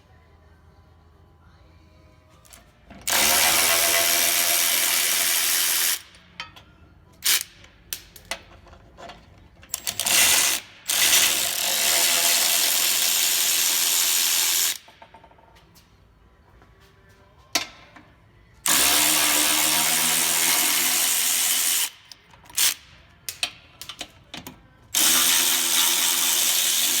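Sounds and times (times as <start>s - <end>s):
power ratchet spinning: 3.0s - 6.1s, 9.8s - 14.9s, 18.6s - 22.9s, 24.9s - 27.0s.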